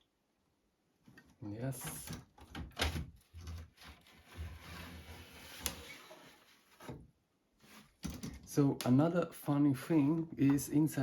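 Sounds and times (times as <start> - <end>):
plastic case scraping: 3.1 - 7.0.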